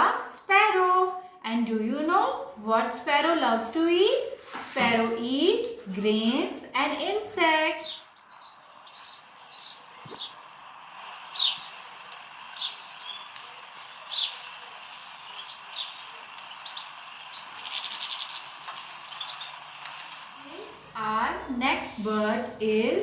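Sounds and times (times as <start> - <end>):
sparrow chirping: 7.8 - 20.3.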